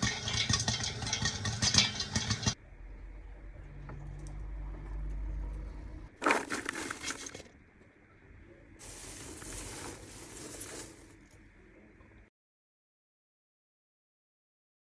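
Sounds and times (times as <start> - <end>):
popcorn crackling: 0.0 - 2.6, 6.2 - 7.5, 8.8 - 11.4.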